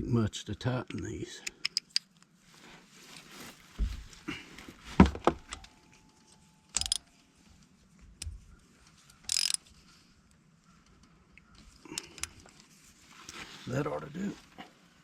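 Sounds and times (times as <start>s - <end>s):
metallic clicks and clatters: 6.7s - 7.1s, 9.1s - 9.6s
wrench scraping: 6.8s - 7.0s, 9.1s - 9.6s.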